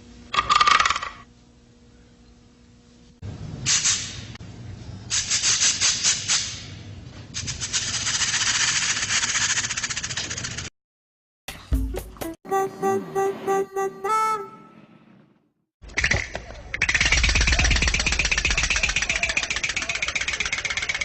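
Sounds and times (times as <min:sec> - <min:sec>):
rattling shaking noise: 0:07.4 - 0:10.7, 0:16.8 - 0:21.0.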